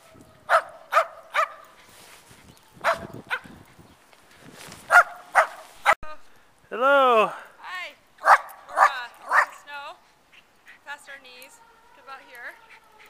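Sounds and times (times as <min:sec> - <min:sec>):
dog barking: 0:00.5 - 0:01.7, 0:02.8 - 0:03.5, 0:04.9 - 0:06.0, 0:08.2 - 0:09.6.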